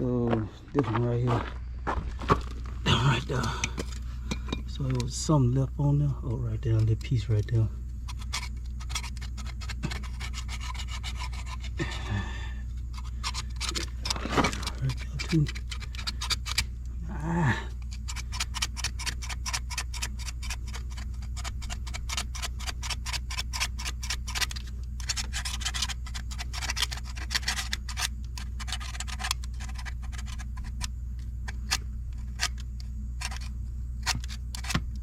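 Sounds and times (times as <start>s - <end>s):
steady low hum: 0.0s - 35.0s
scraping strokes on a cap: 6.6s - 16.7s, 17.8s - 32.6s.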